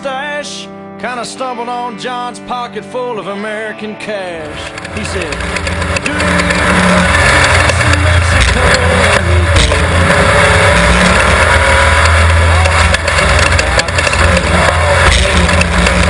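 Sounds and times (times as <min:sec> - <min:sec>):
race car engine running loudly: 0:04.4 - 0:16.0
knocks and rattles: 0:04.6 - 0:16.0.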